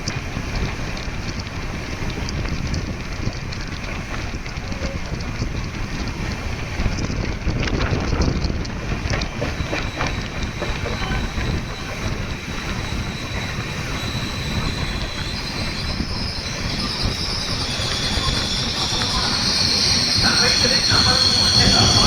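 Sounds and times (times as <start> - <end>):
train rumbling on track: 0.0 - 22.0
high wheel squeal: 9.0 - 22.0.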